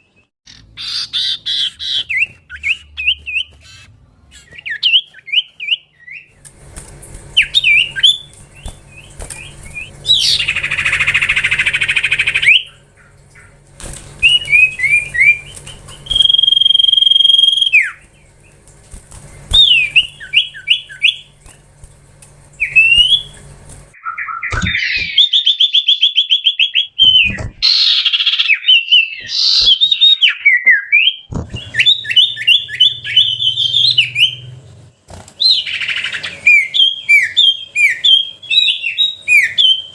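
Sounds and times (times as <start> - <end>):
harsh buzzing bird note: 6.3 - 21.5
bird singing whistles and trills: 14.2 - 18.0, 19.5 - 21.3, 22.6 - 23.4, 24.0 - 34.5, 35.4 - 39.9.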